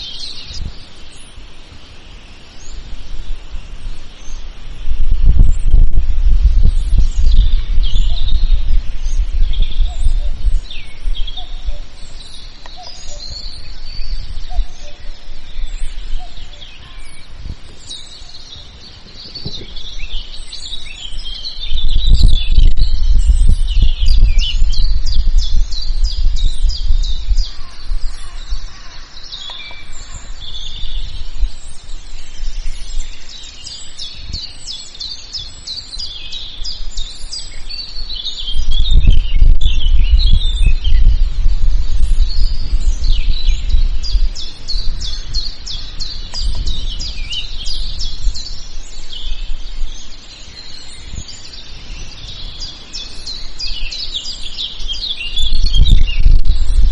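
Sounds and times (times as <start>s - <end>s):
birds chirping and singing: 0.0s - 56.9s
low rumble: 3.1s - 18.2s, 18.8s - 29.0s, 38.4s - 50.0s.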